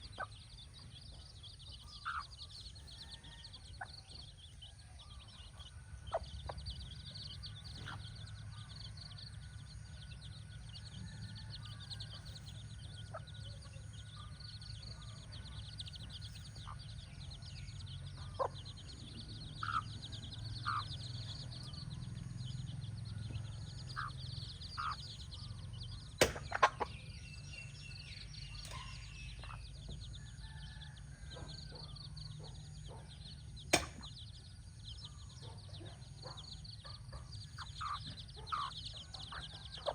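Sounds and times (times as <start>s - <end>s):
chicks peeping: 0.0s - 39.9s
hen clucking: 2.0s - 2.4s, 19.5s - 21.0s, 23.9s - 25.2s, 26.2s - 27.0s, 35.8s - 39.9s
sharp knocks: 26.2s - 26.7s, 33.7s - 34.1s.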